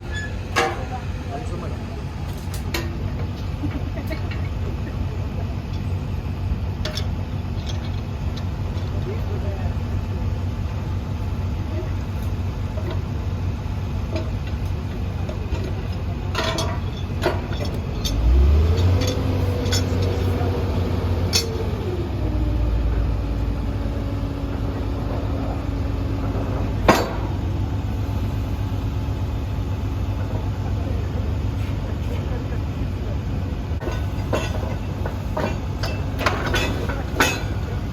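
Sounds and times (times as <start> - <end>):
metal clanks: 0.0 - 1.1, 2.2 - 5.0, 6.8 - 9.6, 11.7 - 21.8, 24.4 - 27.5, 33.8 - 37.9
heavy engine revving: 3.2 - 37.9.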